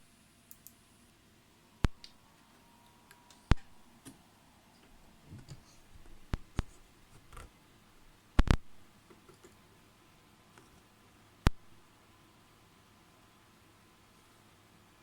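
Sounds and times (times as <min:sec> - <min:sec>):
sharp clicks: 0:08.4 - 0:08.7.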